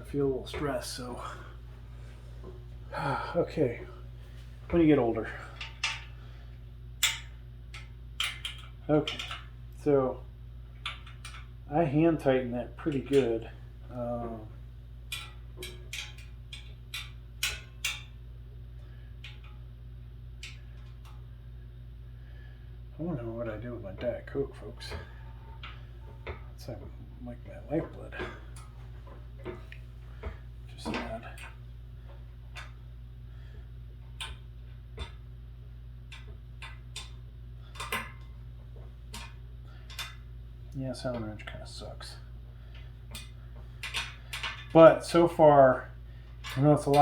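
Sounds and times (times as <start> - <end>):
steady low hum: 0.0 - 47.0.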